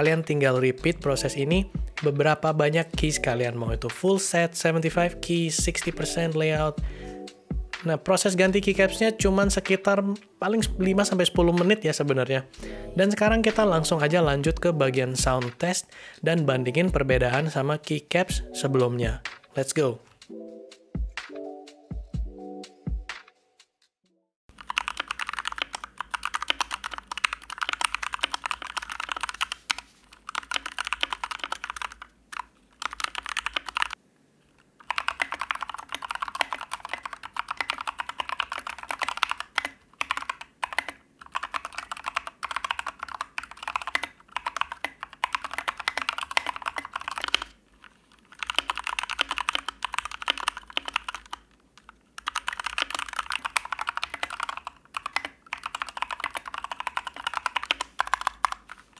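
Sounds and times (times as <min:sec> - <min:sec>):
mechanical keyboard typing: 0:24.5 - 0:34.0, 0:34.8 - 0:58.9.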